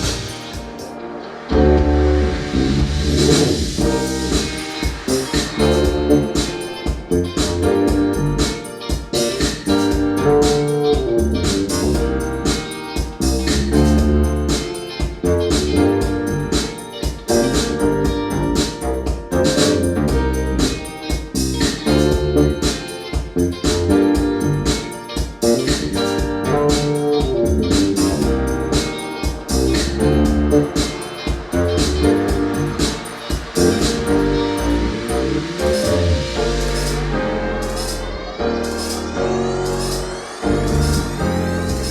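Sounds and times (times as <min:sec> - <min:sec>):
keyboard music with steady beat: 0:00.0 - 0:41.9.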